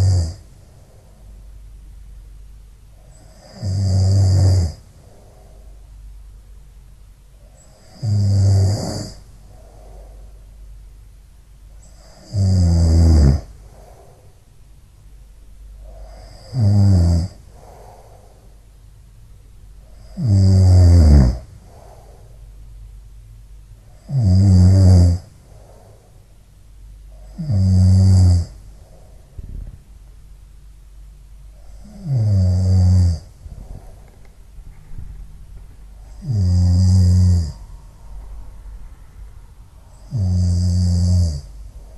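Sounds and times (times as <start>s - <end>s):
cat snoring: 0.0s - 0.5s, 3.1s - 5.6s, 7.6s - 10.3s, 11.8s - 14.3s, 15.8s - 18.5s, 19.9s - 22.4s, 23.9s - 26.1s, 27.1s - 28.6s, 31.6s - 34.0s, 36.0s - 37.7s, 39.9s - 41.9s.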